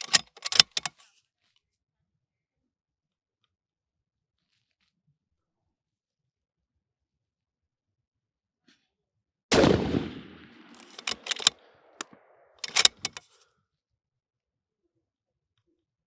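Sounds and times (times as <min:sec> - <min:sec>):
rifle bolt metallic clicks: 0:00.0 - 0:00.9, 0:09.5 - 0:13.2
suppressed rifle shot: 0:09.5 - 0:13.2.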